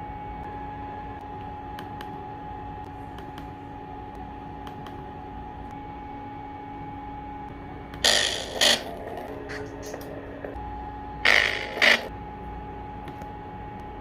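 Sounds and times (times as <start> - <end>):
speaker hum with hiss: 0.0 - 14.0
loud noisy sound effect blasts: 11.2 - 12.1.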